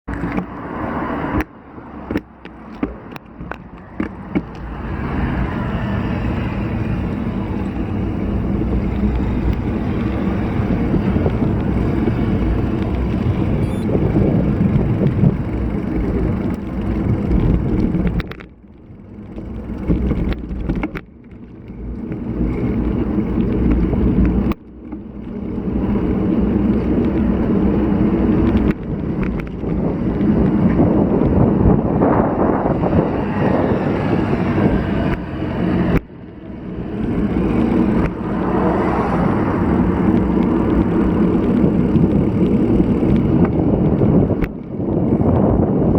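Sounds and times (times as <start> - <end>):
sharp clicks and knocks: 0.1 - 0.6, 1.2 - 4.8, 8.4 - 31.8
bicycle tyre and road noise: 0.1 - 45.9
wind buffeting microphone: 0.1 - 45.9.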